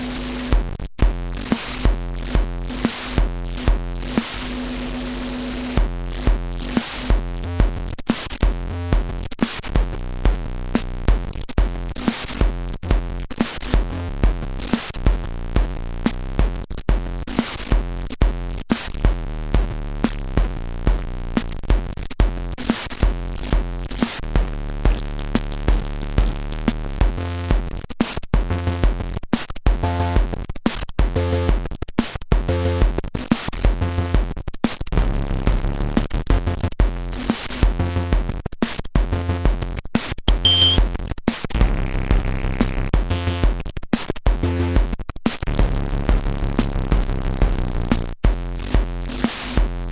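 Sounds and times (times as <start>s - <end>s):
drum machine kick: 0.5s - 4.4s, 5.8s - 15.8s, 40.3s - 41.0s, 48.2s - 49.9s
higher synth note pattern: 40.3s - 40.8s
synth bass line: 40.3s - 40.8s.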